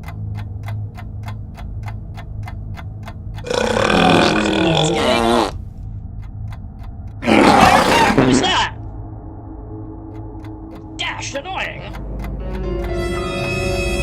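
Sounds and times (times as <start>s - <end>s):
faint ticking: 0.0s - 14.0s
low hum: 0.0s - 14.0s
loud burp: 3.4s - 5.6s, 7.2s - 8.6s.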